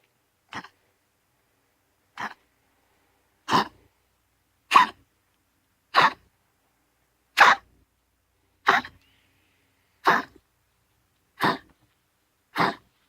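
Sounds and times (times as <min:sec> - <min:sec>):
dog coughing: 0:02.2 - 0:02.4, 0:03.5 - 0:03.8, 0:04.7 - 0:05.0, 0:05.9 - 0:06.3, 0:07.4 - 0:07.7, 0:08.7 - 0:09.0, 0:10.0 - 0:10.4, 0:11.4 - 0:11.8, 0:12.5 - 0:12.9.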